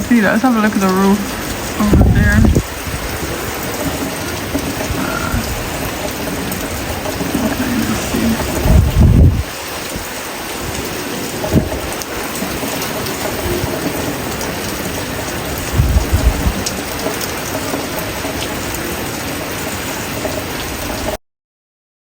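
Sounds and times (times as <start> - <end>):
low rumbles: 0.0 - 10.1, 15.6 - 16.7
heavy rain hissing: 0.0 - 21.2.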